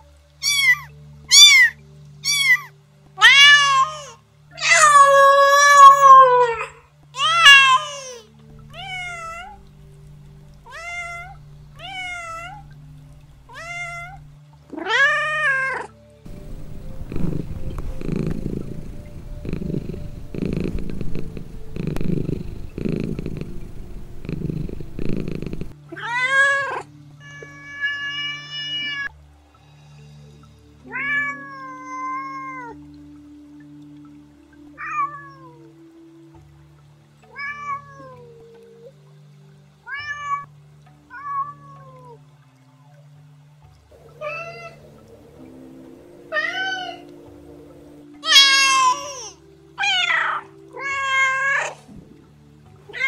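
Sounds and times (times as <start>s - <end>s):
faint background music: 0.0s - 53.0s
cat meowing: 0.4s - 9.7s, 10.7s - 12.8s, 13.5s - 14.2s, 14.8s - 29.1s, 30.9s - 32.8s, 44.2s - 44.8s, 46.3s - 47.1s, 48.2s - 51.8s
cat purring: 8.6s - 14.9s, 16.3s - 25.8s, 44.0s - 49.3s.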